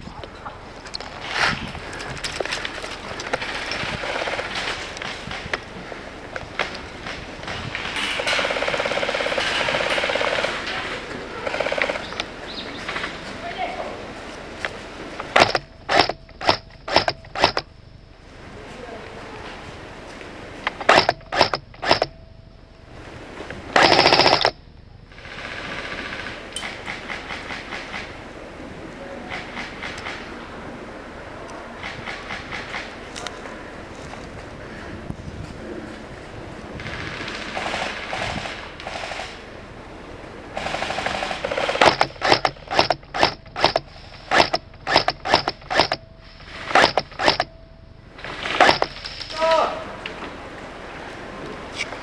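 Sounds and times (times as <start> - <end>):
airsoft gun firing bursts: 15.3 - 17.7, 20.7 - 22.1, 23.8 - 24.6, 36.8 - 39.4, 40.6 - 47.5, 48.2 - 49.1
airsoft gun single shots: 48.5 - 49.0.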